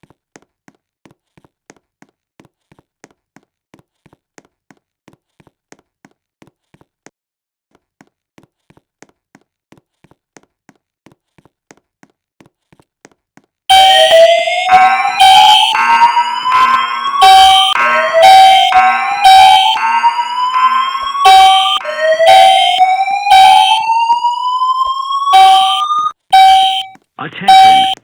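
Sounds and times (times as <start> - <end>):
fire alarm whoop tone: 13.7 - 28.0
short steady alarm blasts: 13.7 - 28.0.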